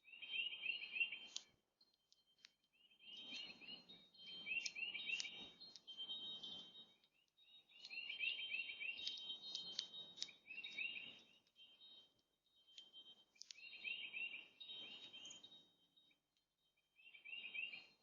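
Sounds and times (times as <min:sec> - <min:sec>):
small songbirds chirping: 0:00.0 - 0:18.0.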